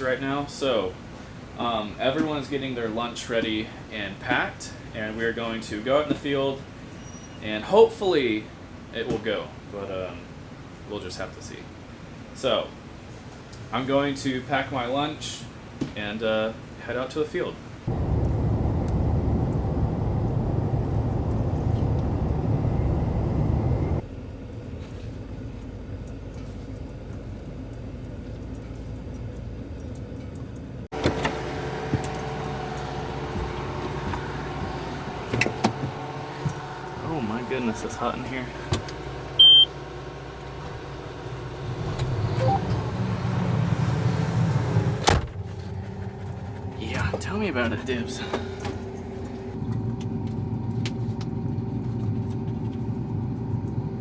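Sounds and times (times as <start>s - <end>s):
vehicle engine and road rumble: 17.7s - 54.0s.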